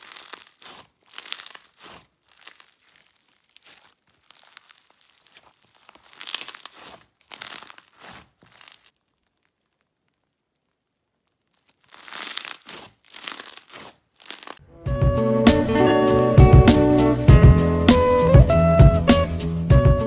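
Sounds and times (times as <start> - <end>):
slime crackling and popping: 0.0 - 14.6.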